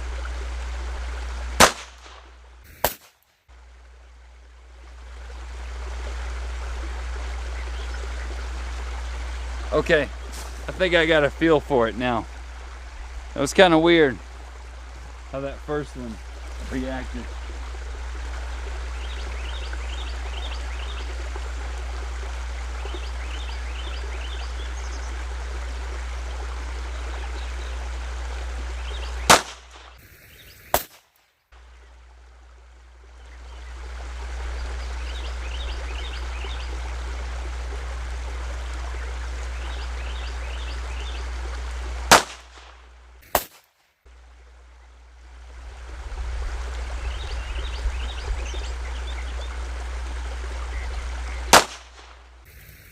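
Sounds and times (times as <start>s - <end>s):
hiss with low hum: 0.0s - 30.9s, 44.1s - 52.9s
pistol shots: 1.6s - 3.2s, 29.3s - 29.9s, 30.7s - 31.0s, 42.1s - 43.6s, 51.5s - 52.1s
birds chirping: 6.6s - 30.9s, 33.1s - 42.7s, 46.9s - 52.9s.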